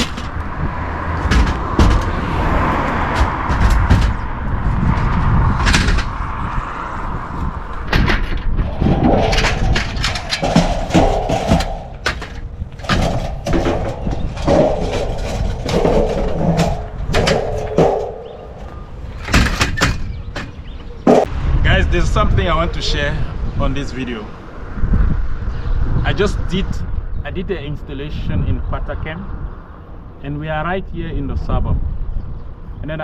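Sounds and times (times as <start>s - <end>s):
sharp knocks and thumps: 0.0s - 6.2s, 7.8s - 21.3s
car road rumble: 0.0s - 26.2s.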